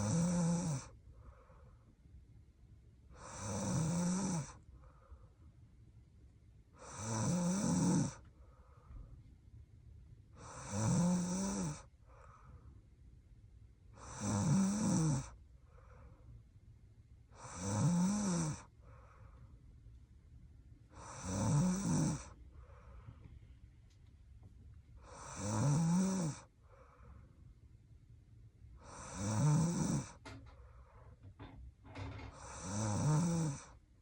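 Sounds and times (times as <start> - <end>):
woman snoring: 0.0 - 1.0, 3.2 - 4.6, 6.8 - 8.2, 10.4 - 11.9, 14.0 - 15.4, 17.4 - 18.7, 21.0 - 22.4, 25.0 - 26.5, 28.8 - 30.4, 32.0 - 33.8
soft breathing: 0.8 - 2.0, 4.5 - 5.7, 8.0 - 9.4, 11.8 - 12.9, 15.3 - 16.5, 18.4 - 20.0, 22.1 - 24.0, 26.2 - 27.7, 30.0 - 31.4.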